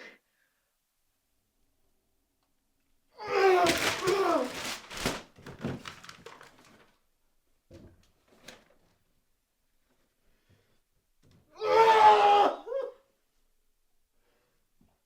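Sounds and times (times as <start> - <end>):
person crying out: 3.2 - 4.6, 11.6 - 13.0.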